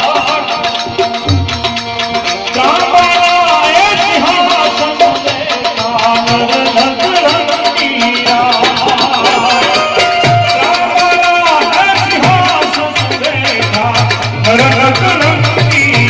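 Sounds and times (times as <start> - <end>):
fast steady percussion: 0.0 - 16.0.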